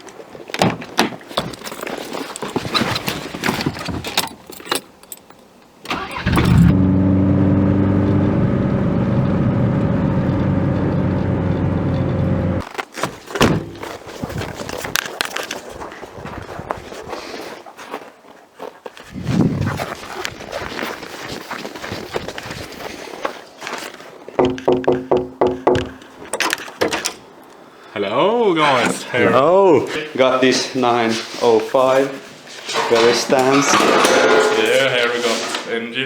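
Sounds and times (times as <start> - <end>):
clattering knocks and rattles: 0.6 - 6.7, 10.0 - 12.7, 24.4 - 27.2, 32.8 - 35.2
lawnmower engine running: 5.9 - 12.6.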